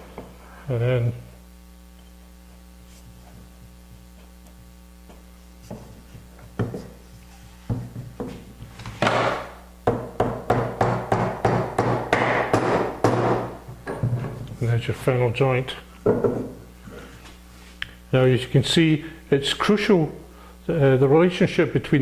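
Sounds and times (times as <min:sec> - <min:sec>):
hammer knocking wood: 0:05.7 - 0:06.9, 0:09.0 - 0:13.6.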